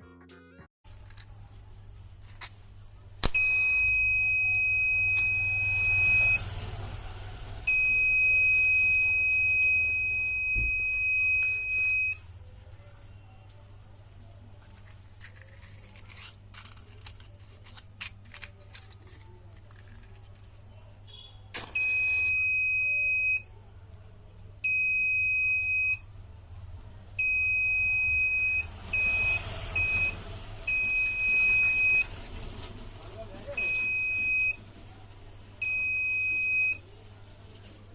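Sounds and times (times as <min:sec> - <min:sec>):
fire alarm buzzer bursts: 0:07.7 - 0:12.2.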